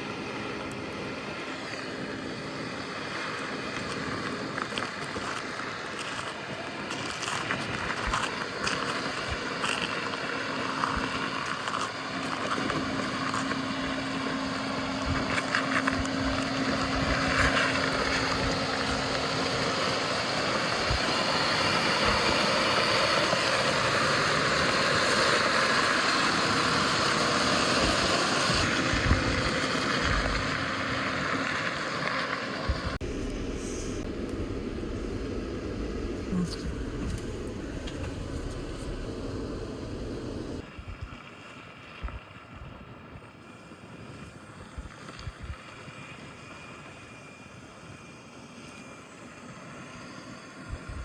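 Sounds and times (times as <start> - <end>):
engine and tyre roar: 0.0 - 40.7.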